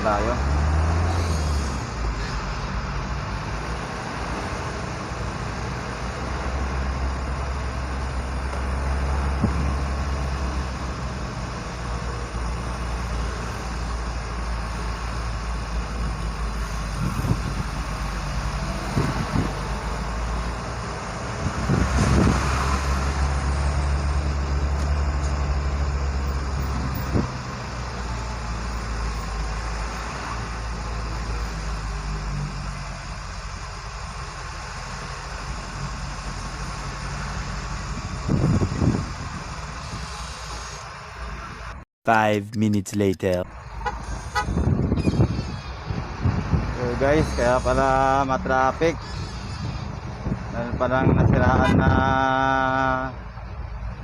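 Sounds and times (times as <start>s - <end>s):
truck engine droning: 0.0s - 41.8s.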